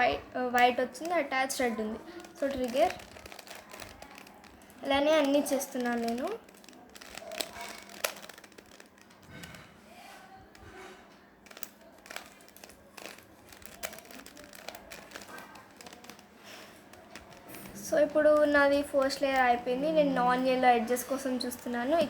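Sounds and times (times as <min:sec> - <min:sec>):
plastic puzzle cube clicking: 0:00.6 - 0:09.6, 0:11.4 - 0:19.5.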